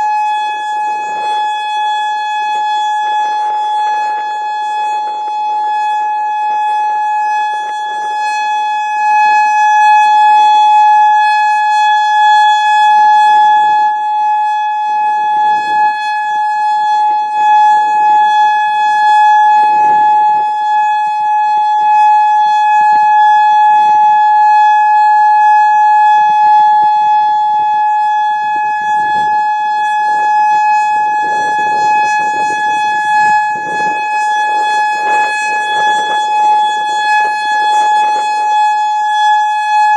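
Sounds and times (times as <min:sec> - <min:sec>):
warning siren steady tone: 0:00.0 - 0:39.9
wind buffeting microphone: 0:19.6 - 0:20.5, 0:28.5 - 0:39.2.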